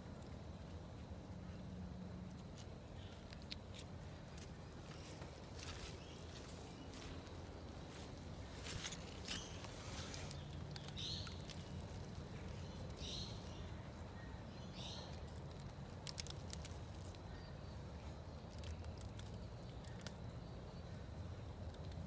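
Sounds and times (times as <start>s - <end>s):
succulent leaves snapping: 15.1s - 17.2s.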